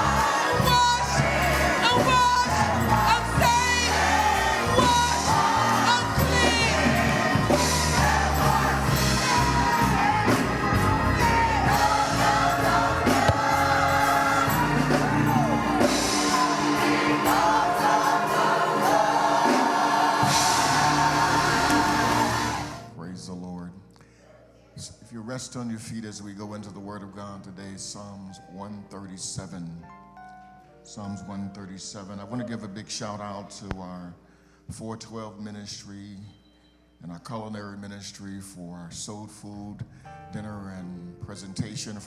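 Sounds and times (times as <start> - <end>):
bass and drums playing: 0.0 - 22.9
choir singing gospel song: 0.0 - 23.0.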